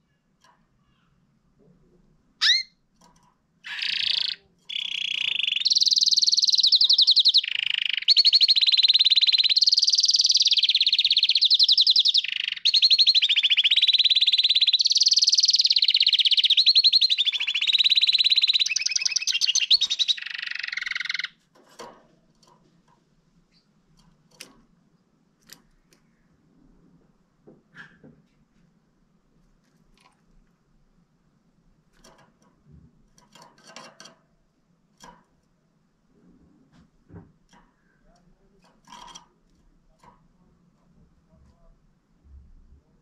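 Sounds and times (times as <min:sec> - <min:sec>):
canary singing trills: 0:02.4 - 0:02.8, 0:03.6 - 0:21.9.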